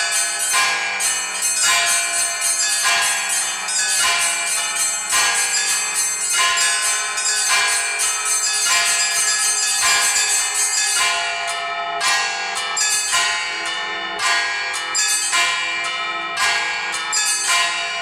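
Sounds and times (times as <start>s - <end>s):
large bells ringing: 0.0s - 18.0s
small high church bells: 0.0s - 18.0s.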